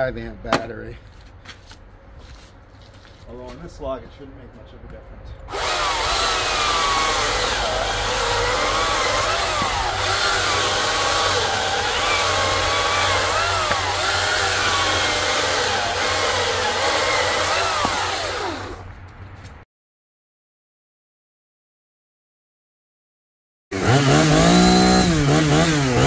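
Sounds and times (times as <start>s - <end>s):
electric chainsaw cutting log: 5.5s - 18.9s, 23.7s - 26.0s.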